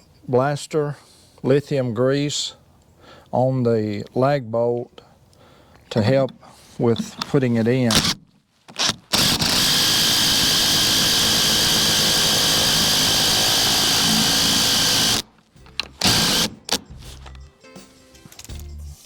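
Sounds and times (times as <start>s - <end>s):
impact driver hammering bolt: 15.8s - 16.9s.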